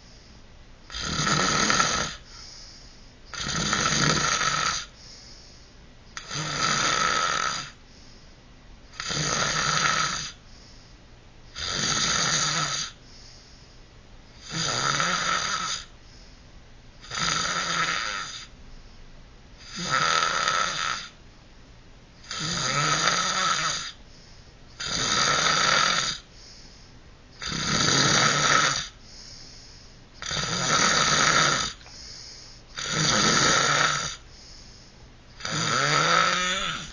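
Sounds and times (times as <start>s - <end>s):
quiet breaths: 0.0s - 11.7s, 12.3s - 21.2s, 22.2s - 36.9s
loud rasping snoring: 0.9s - 2.6s, 3.3s - 4.9s, 6.2s - 7.8s, 8.9s - 10.4s, 11.5s - 13.0s, 14.4s - 15.9s, 17.0s - 18.5s, 19.6s - 21.2s, 22.2s - 24.0s, 24.8s - 26.3s, 27.4s - 29.0s, 30.2s - 34.2s, 35.4s - 36.9s.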